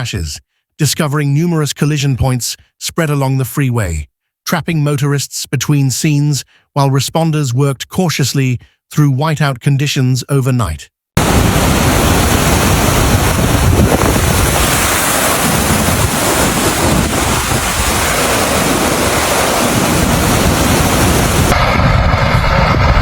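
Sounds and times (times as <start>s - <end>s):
storm wind buffeting microphone: 11.2s - 23.0s.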